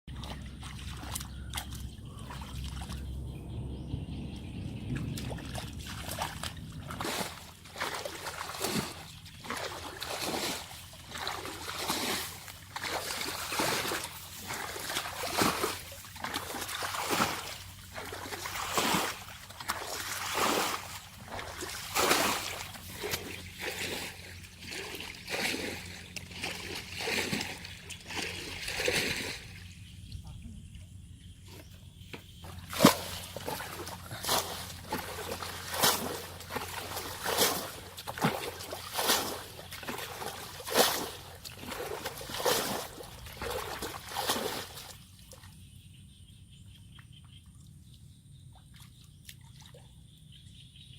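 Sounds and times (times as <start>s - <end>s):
low rumble: 0.1s - 10.0s
water splashing and sloshing: 0.1s - 45.8s, 47.4s - 50.2s.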